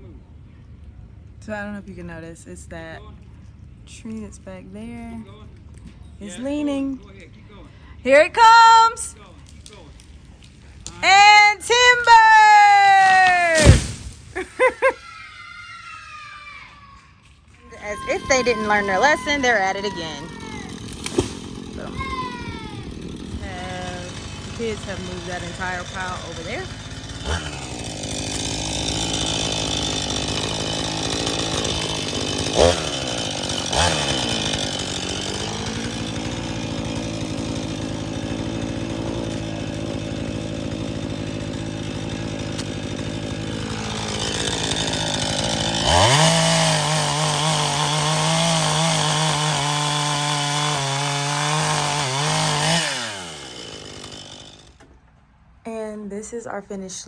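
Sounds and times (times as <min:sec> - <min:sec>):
chainsaw running: 0:11.0 - 0:14.8, 0:17.4 - 0:55.0.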